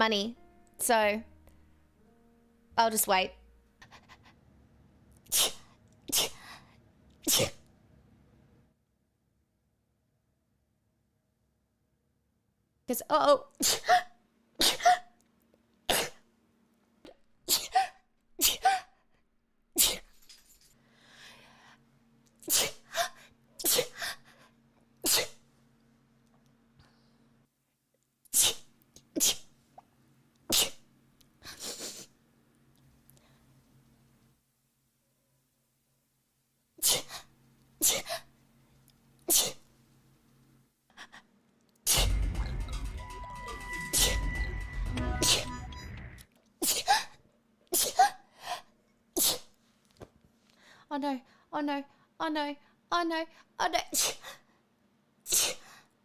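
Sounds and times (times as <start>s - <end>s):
person sneezing: 5.3s - 6.5s, 7.2s - 7.6s, 13.6s - 15.1s, 17.5s - 19.0s, 19.8s - 20.2s, 22.4s - 24.1s, 25.0s - 25.4s, 28.3s - 29.5s, 30.5s - 30.8s, 36.8s - 38.3s, 39.3s - 39.6s, 46.6s - 48.2s, 53.9s - 54.4s, 55.3s - 55.8s.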